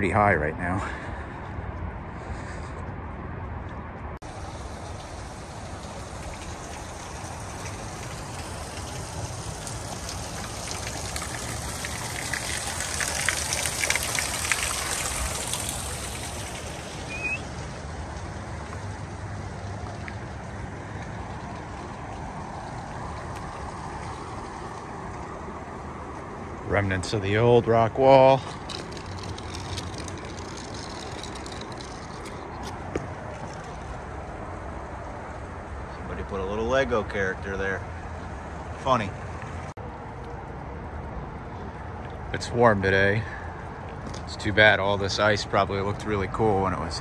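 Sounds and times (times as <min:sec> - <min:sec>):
river rushing: 0:04.3 - 0:17.9.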